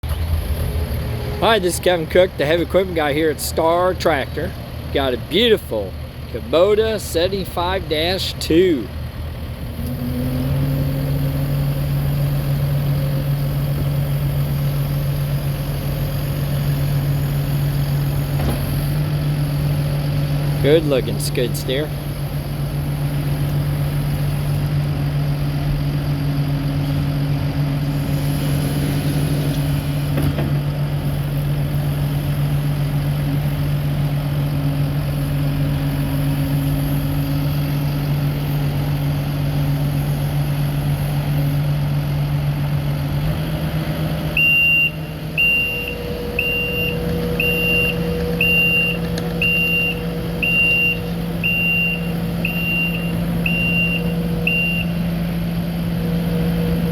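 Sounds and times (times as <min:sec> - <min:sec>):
diesel engine idling: 0:00.0 - 0:56.9
backup alarm beeping: 0:44.4 - 0:55.0.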